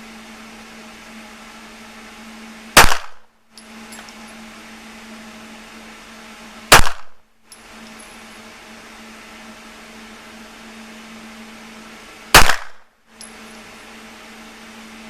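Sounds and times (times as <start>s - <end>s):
steady background hum: 0.0s - 15.0s
handgun shot: 2.8s - 3.3s, 6.7s - 7.2s, 12.4s - 12.8s.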